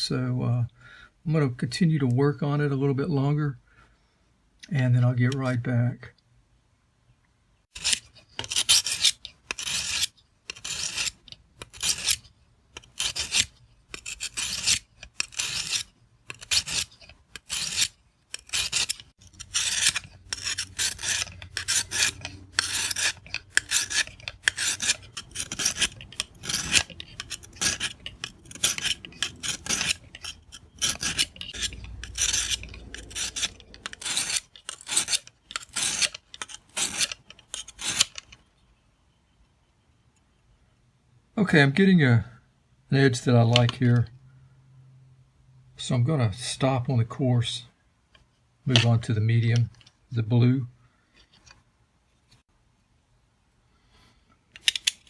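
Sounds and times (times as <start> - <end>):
knife blade rasping on stone: 7.7 - 38.3.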